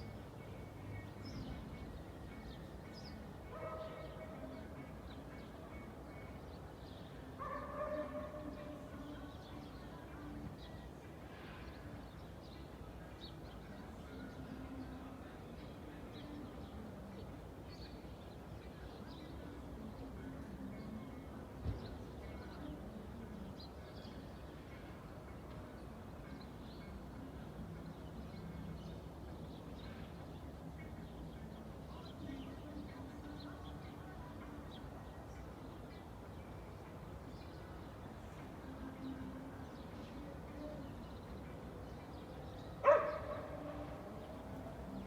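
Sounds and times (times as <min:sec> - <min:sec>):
dog barking: 0:03.6 - 0:04.3, 0:07.4 - 0:08.8, 0:42.8 - 0:43.8
distant traffic hum: 0:38.5 - 0:45.0.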